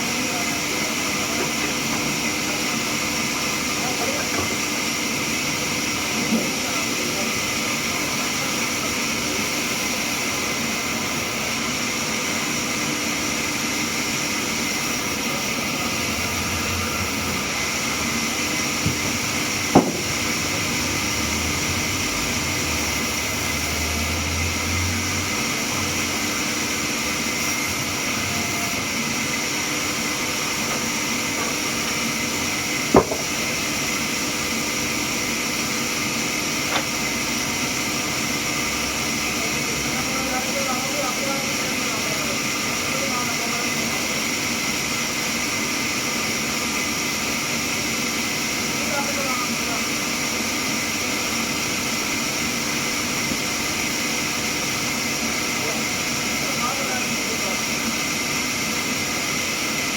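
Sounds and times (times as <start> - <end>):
sawmill machinery hiss: 0.0 - 59.9
sharp knocks: 19.7 - 20.2, 32.9 - 33.4.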